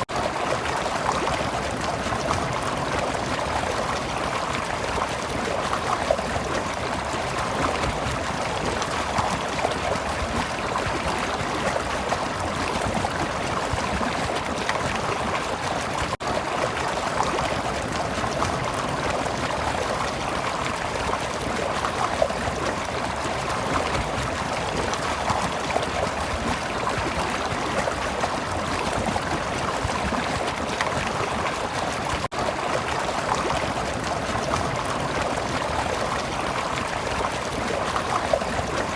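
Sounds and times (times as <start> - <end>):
stream flowing over rocks: 0.0 - 38.9.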